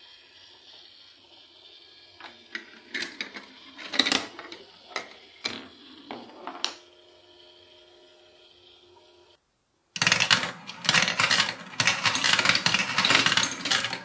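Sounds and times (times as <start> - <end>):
faint hum: 0.0 - 10.0
plastic toy pieces clattering: 2.2 - 5.6, 10.0 - 14.0.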